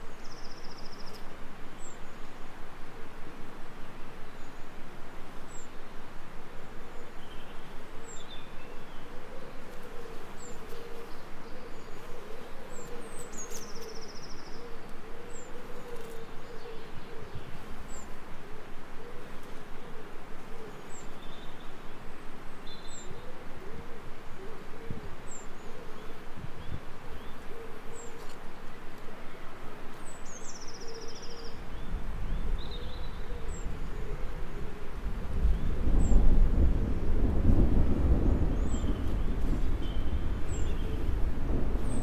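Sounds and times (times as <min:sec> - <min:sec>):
steady hiss: 0:00.0 - 0:42.0.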